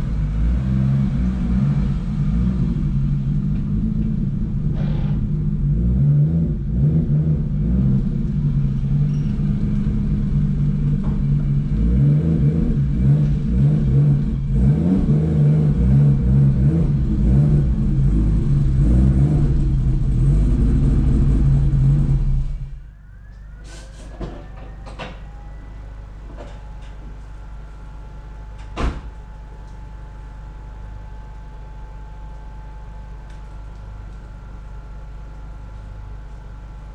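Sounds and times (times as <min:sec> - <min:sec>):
vehicle engine running: 0:00.0 - 0:23.3.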